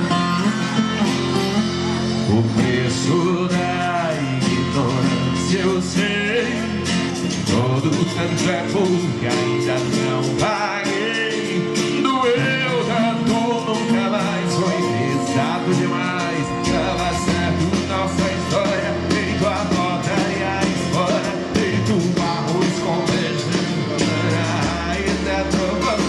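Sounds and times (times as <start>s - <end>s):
guitar: 0.0s - 26.0s
live band playing: 0.0s - 26.0s
steady beat: 6.7s - 26.0s.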